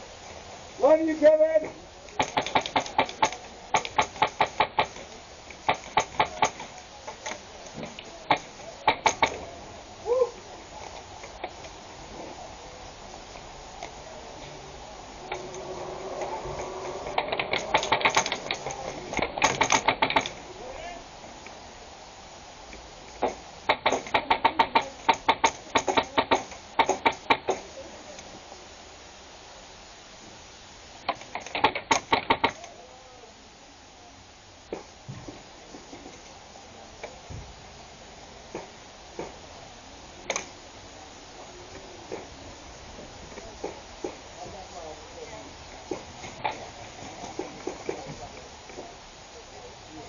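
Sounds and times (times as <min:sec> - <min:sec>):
airsoft guns firing: 0:02.2 - 0:06.7, 0:17.2 - 0:20.4.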